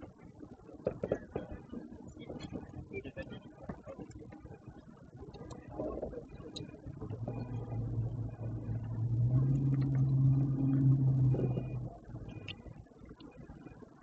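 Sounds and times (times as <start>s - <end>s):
motor engine humming: 5.8s - 12.9s.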